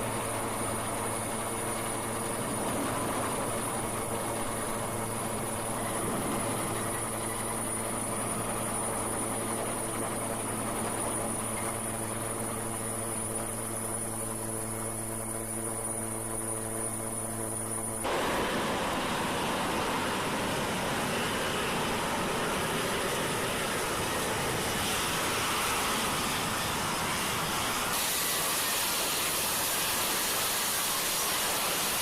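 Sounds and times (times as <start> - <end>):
jet engine whine: 0.0 - 32.0
jet engine rushing noise: 18.0 - 32.0.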